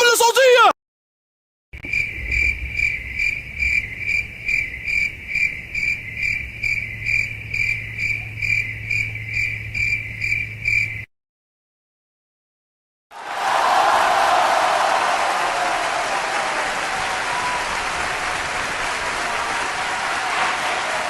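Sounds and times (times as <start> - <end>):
low hum: 1.8 - 11.0
cricket chirping: 1.8 - 11.1.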